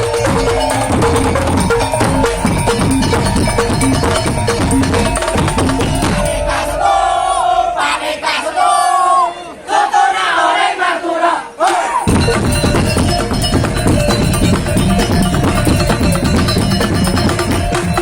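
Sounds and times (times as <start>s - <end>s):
percussion ensemble driving beat: 0.0s - 8.4s, 11.7s - 18.0s
group shouting calls: 6.0s - 12.2s.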